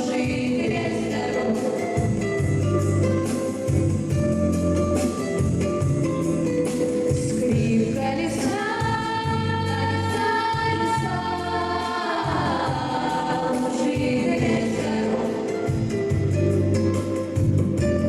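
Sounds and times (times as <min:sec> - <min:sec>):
choir-like wordless vocal: 0:00.0 - 0:02.4, 0:07.4 - 0:16.2
bass accompaniment: 0:00.0 - 0:18.0.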